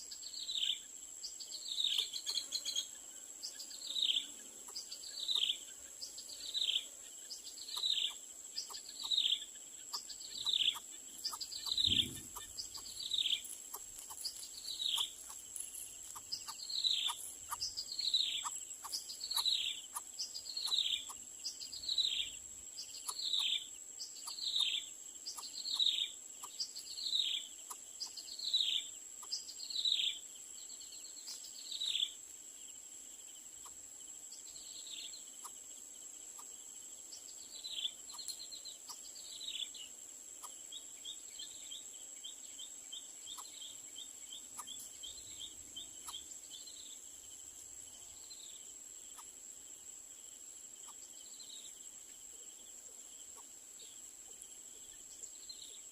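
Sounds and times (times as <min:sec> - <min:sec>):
high insect drone: 0:00.0 - 0:55.9.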